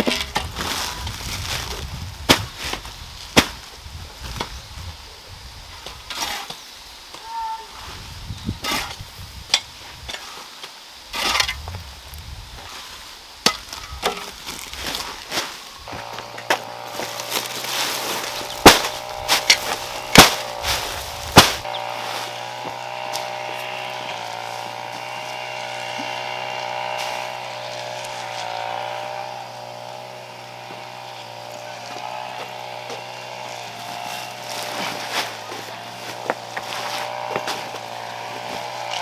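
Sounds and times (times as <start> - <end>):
steady motor hum: 13.5 - 39.0
sharp knocks: 18.5 - 20.6.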